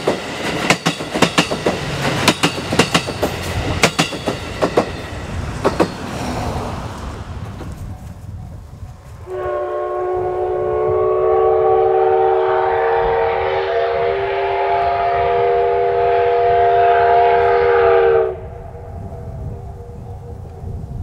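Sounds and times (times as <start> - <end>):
steam locomotive whistle blast: 9.3 - 18.9.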